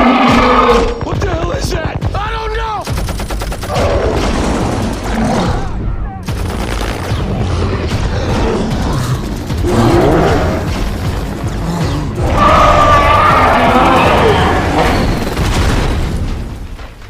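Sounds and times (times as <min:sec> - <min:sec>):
chaotic combat noise: 0:00.0 - 0:17.0
rapid machine-gun fire: 0:02.8 - 0:05.2, 0:06.2 - 0:11.6, 0:13.2 - 0:16.6
loud orchestral score: 0:11.6 - 0:15.3.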